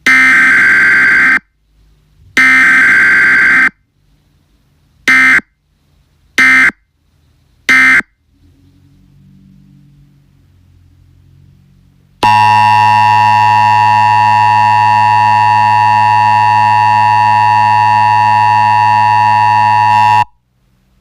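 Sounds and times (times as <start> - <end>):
two-tone alarm: 0.1 - 1.4, 2.4 - 3.7, 12.2 - 20.4.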